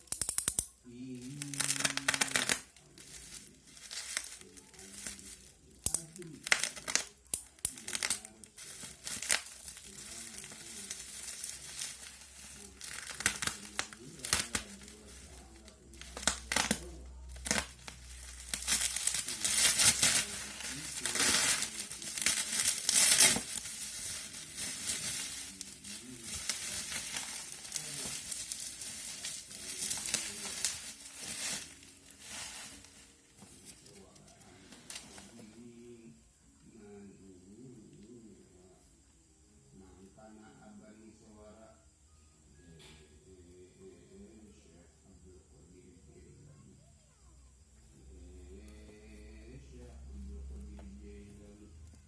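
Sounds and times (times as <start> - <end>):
plastic wrap and cardboard crinkling: 1.0 - 35.7.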